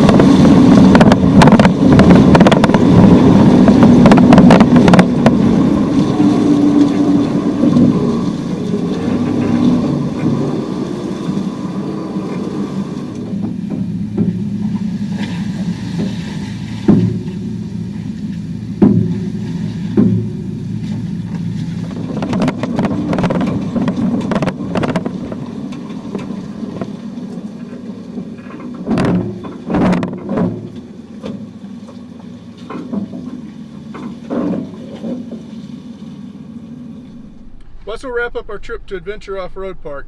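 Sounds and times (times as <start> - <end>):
sharp knocks and thumps: 0.0 - 5.6, 13.3 - 16.2, 16.8 - 17.5, 18.8 - 27.0, 28.5 - 31.5
engine running at low revs: 0.0 - 40.0.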